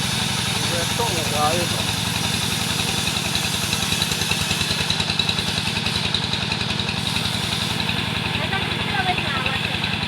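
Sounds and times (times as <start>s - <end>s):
sawing machine engine running: 0.0s - 10.0s.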